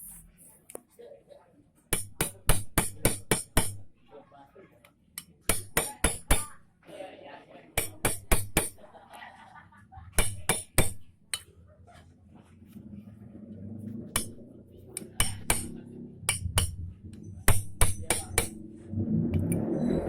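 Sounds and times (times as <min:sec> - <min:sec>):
hammer knocking on metal: 0:05.4 - 0:06.5, 0:07.8 - 0:08.8, 0:10.2 - 0:11.1, 0:14.1 - 0:18.6.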